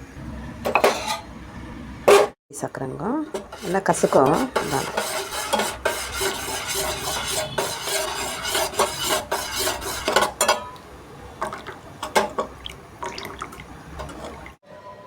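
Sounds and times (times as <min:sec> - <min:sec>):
metal spoon clinking in steel pot: 0:10.0 - 0:10.8
liquid sloshing: 0:11.4 - 0:14.6.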